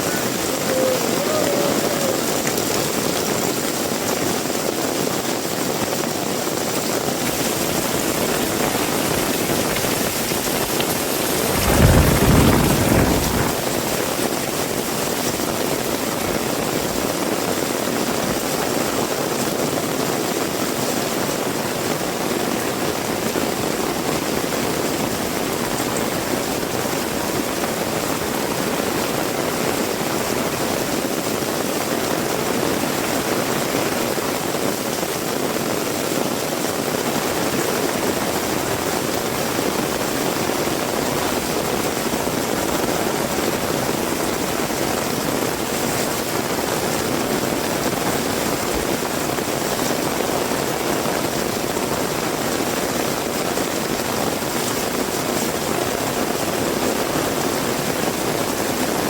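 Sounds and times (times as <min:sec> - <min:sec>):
heavy rain falling: 0:00.0 - 0:59.0
low rumble: 0:11.3 - 0:14.0.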